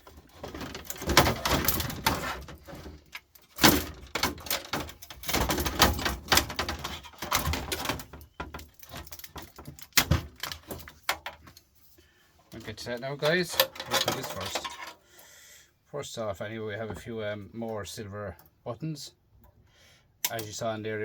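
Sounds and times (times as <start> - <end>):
plastic cracking and creaking: 0.0 - 11.6, 12.5 - 15.0.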